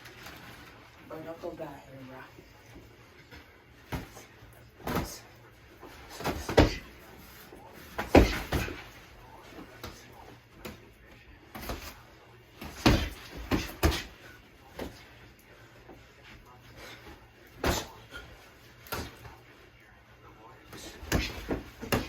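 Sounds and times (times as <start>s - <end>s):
boxing gloves punching: 6.1s - 7.0s, 7.9s - 9.0s, 12.6s - 14.2s, 17.6s - 18.2s, 20.8s - 22.0s.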